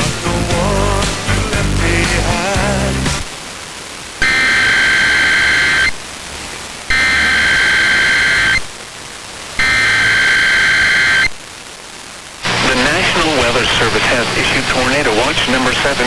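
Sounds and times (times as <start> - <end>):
radio hiss: 0.0 - 16.0
buzzing digital data tones: 4.2 - 6.0, 6.9 - 8.7, 9.6 - 11.4.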